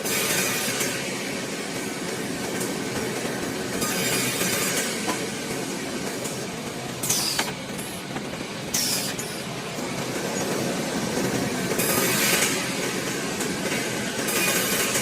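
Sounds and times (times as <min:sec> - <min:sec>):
sawing machine rumble: 0:02.5 - 0:15.0
saw cutting hiss: 0:07.0 - 0:09.6.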